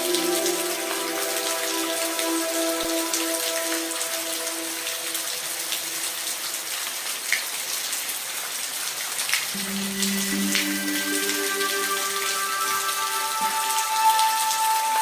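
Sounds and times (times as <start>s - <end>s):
low chord: 0.0s - 5.9s, 9.6s - 15.0s
raindrops ticking: 0.0s - 15.0s
steady rain hiss: 0.0s - 15.0s
soft held musical tones: 9.6s - 15.0s.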